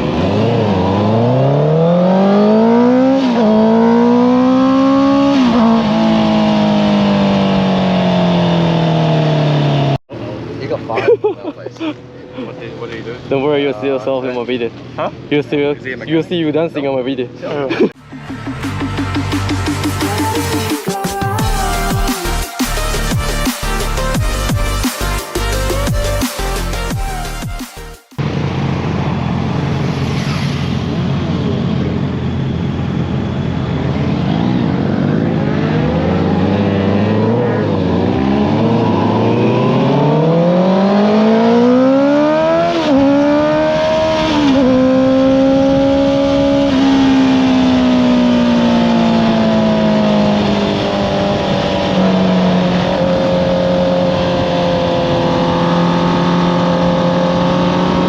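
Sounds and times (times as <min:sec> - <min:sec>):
motorcycle engine revving: 0:00.0 - 0:10.5, 0:28.2 - 0:58.0.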